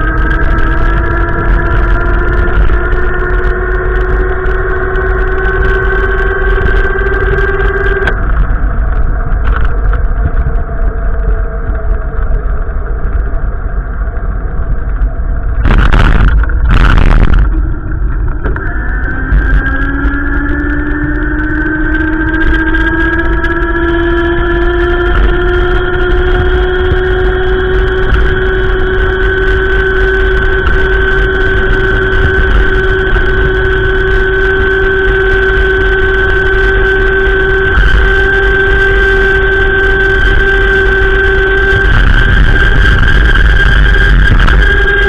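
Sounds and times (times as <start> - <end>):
low rumble: 0.0 - 45.0
vehicle engine whine rising: 0.0 - 45.0
loud bursts of noise: 15.4 - 23.6, 24.3 - 45.0.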